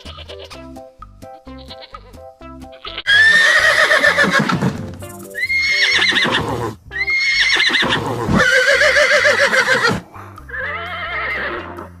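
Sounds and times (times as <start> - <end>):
light plinking background music: 0.0 - 6.3, 10.1 - 12.0
horse whinnying: 2.9 - 4.8, 5.4 - 11.9.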